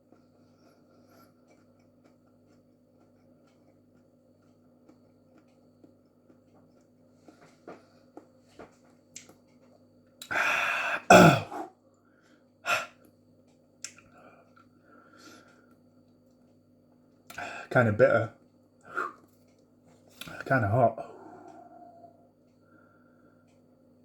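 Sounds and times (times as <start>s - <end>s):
rasping breath: 10.2s - 11.7s, 21.0s - 23.0s
man coughing: 10.3s - 11.7s.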